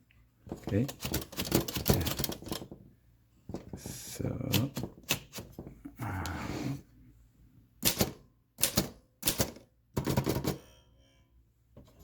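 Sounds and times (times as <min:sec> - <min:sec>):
typewriter mechanical rush: 0:00.8 - 0:02.6
typewriter typebar clacks: 0:00.8 - 0:02.6, 0:07.8 - 0:10.6.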